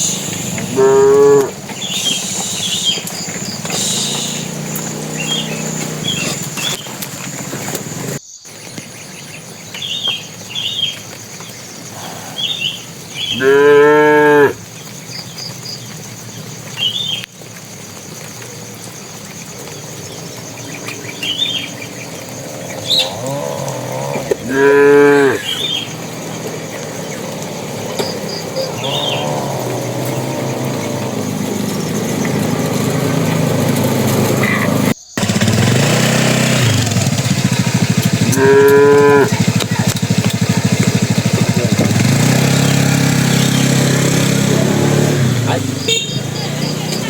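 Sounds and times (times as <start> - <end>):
cattle mooing: 0.5 - 3.0, 13.2 - 14.6, 22.7 - 34.9, 38.2 - 39.4.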